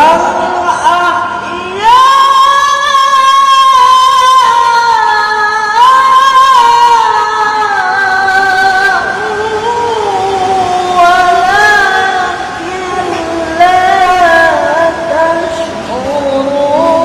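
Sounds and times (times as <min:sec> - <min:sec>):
high-voiced quranic recitation: 0:00.0 - 0:17.0.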